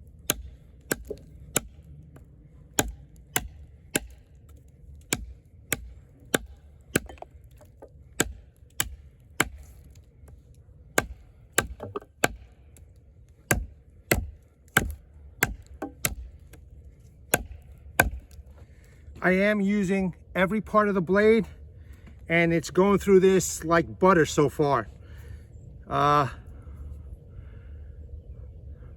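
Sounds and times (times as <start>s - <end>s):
knife chopping into wood: 0.3s - 1.8s, 2.8s - 4.2s, 5.1s - 9.7s, 11.0s - 12.4s, 13.5s - 16.3s, 17.3s - 18.4s.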